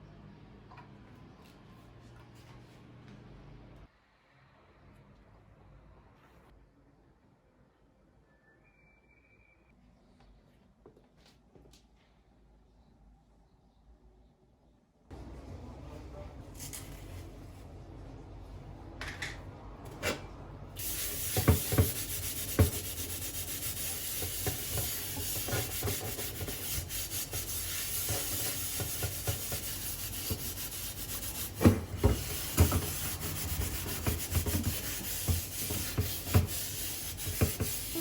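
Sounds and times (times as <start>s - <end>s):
scrubbing hard surface with brush: 20.8s - 38.0s.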